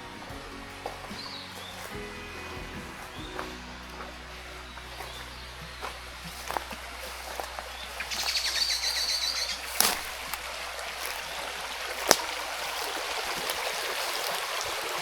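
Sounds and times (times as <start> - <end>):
bird trilling: 1.0 - 10.5.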